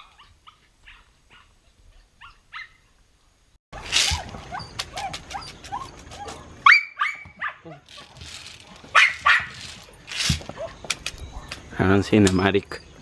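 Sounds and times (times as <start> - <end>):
animal yips and whines: 3.8 - 11.5.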